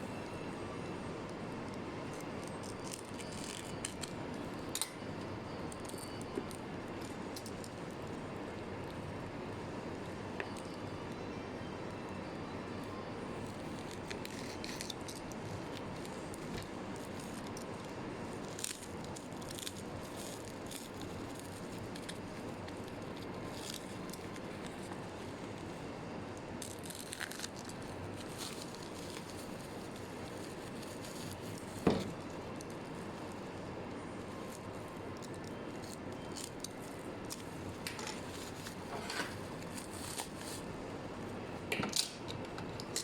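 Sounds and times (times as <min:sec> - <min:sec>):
packaging rustling: 0:26.6 - 0:33.5, 0:34.2 - 0:40.7.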